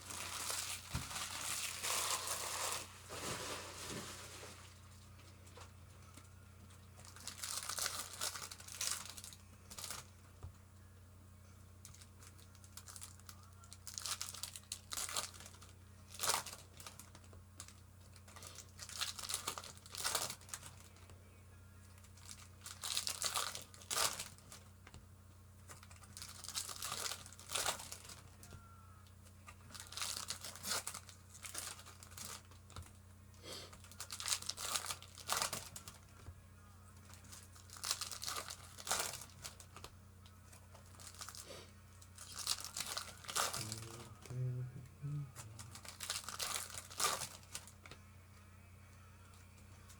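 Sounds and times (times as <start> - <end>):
foil wrappers tearing and crinkling: 0.0 - 4.8, 7.0 - 10.1, 11.8 - 21.1, 22.0 - 25.0, 25.7 - 28.6, 29.4 - 33.0, 33.7 - 36.3, 37.0 - 44.5, 45.4 - 48.0
low electrical hum: 0.0 - 49.9.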